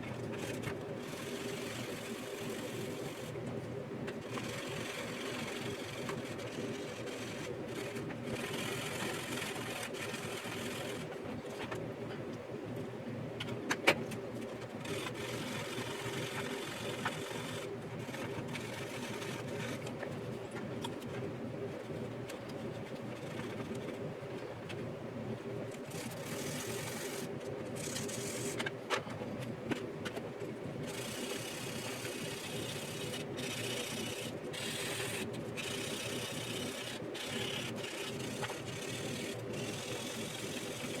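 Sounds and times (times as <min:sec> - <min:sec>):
small machine humming: 0:30.3 - 0:41.0.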